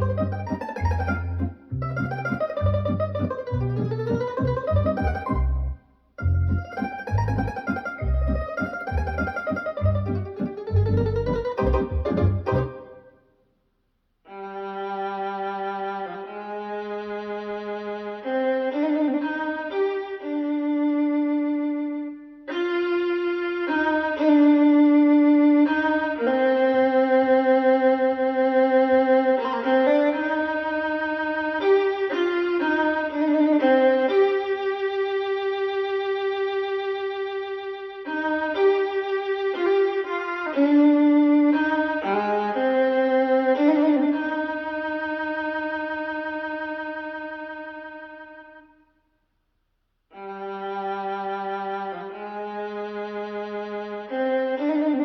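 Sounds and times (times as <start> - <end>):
slow violin music: 0.0 - 13.1, 14.3 - 48.8, 50.1 - 55.0
violin held notes: 0.0 - 13.1.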